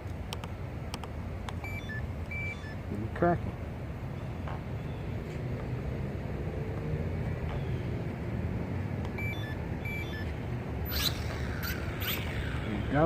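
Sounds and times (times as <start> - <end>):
low outdoor rumble: 0.0 - 13.0
short high electronic beeps: 1.6 - 2.8, 9.2 - 10.3, 10.9 - 12.6.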